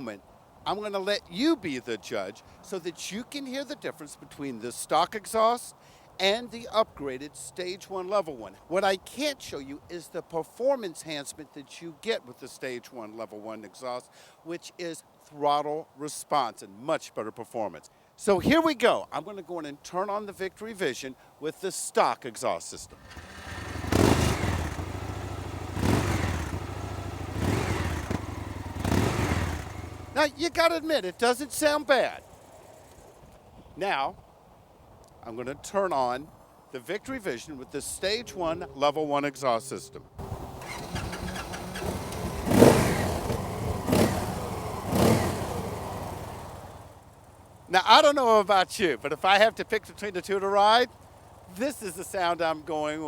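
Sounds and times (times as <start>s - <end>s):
motorcycle engine revving: 22.9s - 30.8s, 40.2s - 47.5s.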